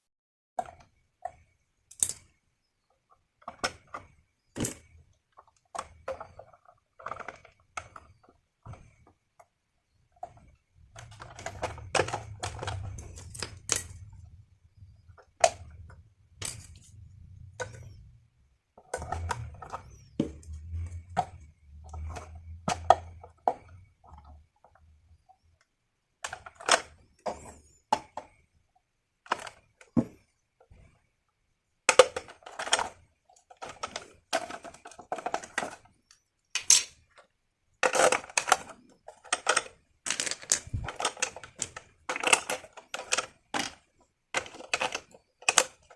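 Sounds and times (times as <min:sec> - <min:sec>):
toy packaging clicks and taps: 0:37.8 - 0:45.9.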